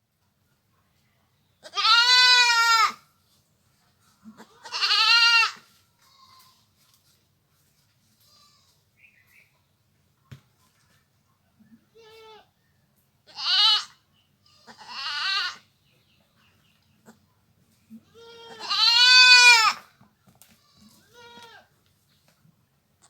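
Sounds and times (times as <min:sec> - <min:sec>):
goat bleating: 0:01.6 - 0:03.0, 0:04.4 - 0:06.6, 0:08.2 - 0:08.8, 0:13.3 - 0:15.6, 0:18.0 - 0:19.9, 0:20.6 - 0:21.7.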